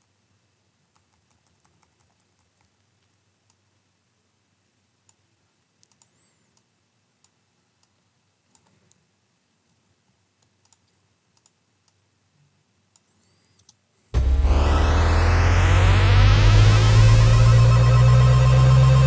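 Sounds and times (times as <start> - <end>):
computer mouse clicks: 0.9 - 3.6, 5.8 - 9.0, 10.4 - 12.0.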